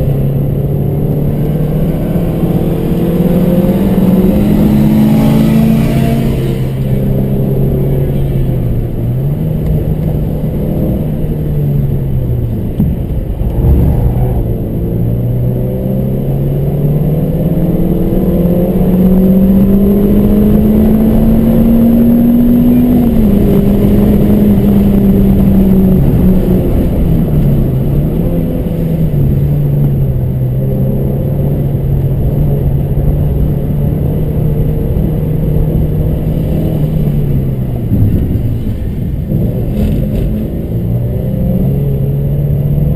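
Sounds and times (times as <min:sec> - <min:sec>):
race car engine revving: 0:13.2 - 0:16.2.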